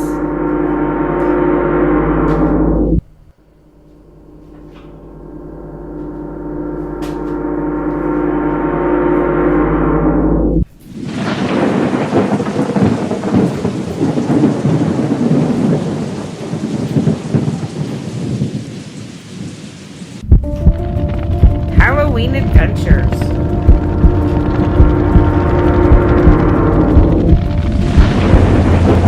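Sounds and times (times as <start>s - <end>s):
gong-like ringing drone: 0.0s - 10.7s, 20.4s - 29.0s
thunder: 6.4s - 29.0s
heavy rain: 10.9s - 29.0s.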